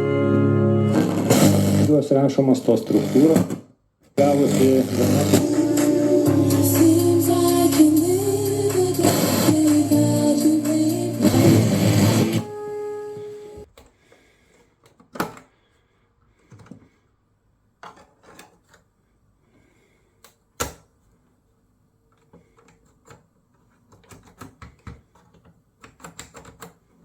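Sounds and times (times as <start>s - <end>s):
music playing: 0.0s - 1.9s, 4.2s - 13.6s.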